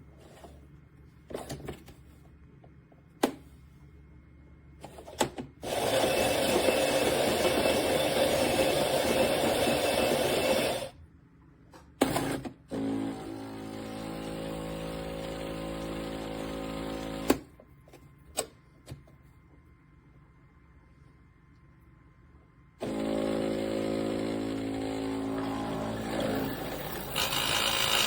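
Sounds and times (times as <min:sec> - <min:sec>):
espresso machine mechanical run: 0:05.6 - 0:11.0, 0:12.8 - 0:17.4, 0:22.8 - 0:28.0.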